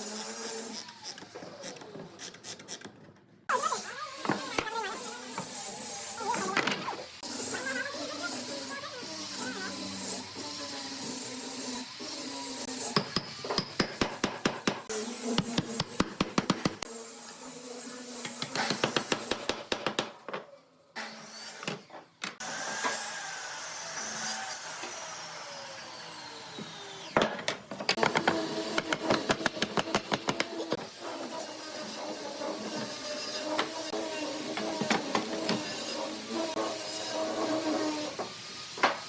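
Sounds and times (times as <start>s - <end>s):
rapid hammering on wood: 12.9s - 16.8s, 18.4s - 20.2s, 27.9s - 30.8s.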